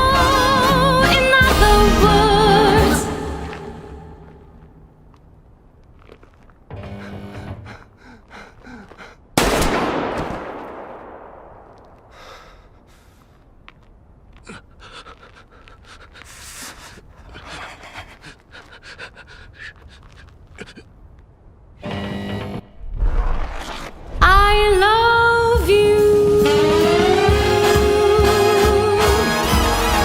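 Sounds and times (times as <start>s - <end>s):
heavy panting breaths: 6.8s - 9.4s, 14.4s - 20.9s.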